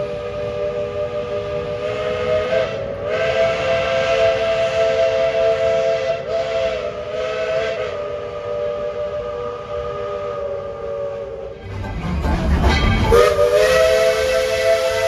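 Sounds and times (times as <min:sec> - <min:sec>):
steam hiss: 0:11.6 - 0:15.0
steam whistle chord: 0:11.6 - 0:15.0.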